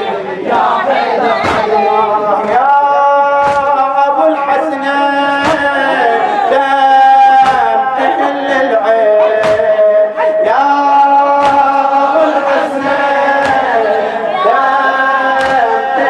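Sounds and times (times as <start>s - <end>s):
men chanting an elegy: 0.0s - 16.0s
chest-beating thumps: 0.6s - 2.8s, 3.4s - 4.0s, 5.2s - 6.1s, 7.3s - 8.0s, 9.2s - 10.0s, 11.3s - 14.8s.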